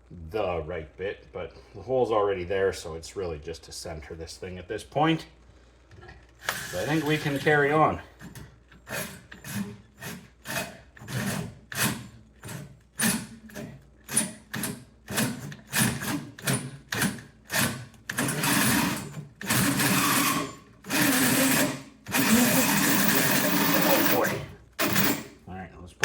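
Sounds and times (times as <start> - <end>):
cordless drill with hole saw: 6.4 - 7.7, 14.1 - 25.4.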